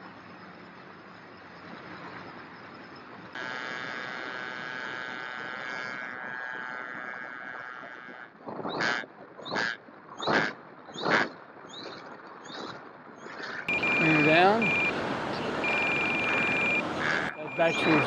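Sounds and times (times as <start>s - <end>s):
electric motor and propeller whining: 1.6s - 8.4s, 13.7s - 18.0s
loud harsh cries: 13.7s - 18.0s.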